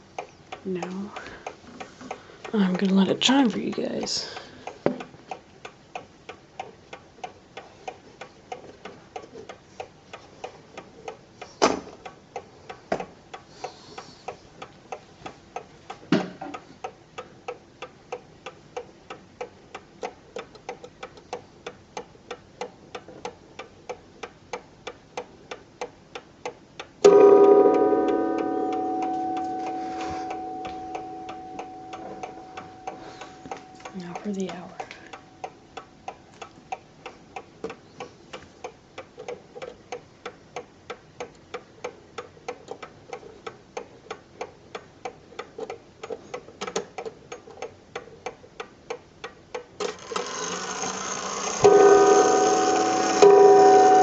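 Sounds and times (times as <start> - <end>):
mantel clock ticking: 0.0 - 54.0
clock gong ringing: 27.0 - 33.9, 50.2 - 54.0.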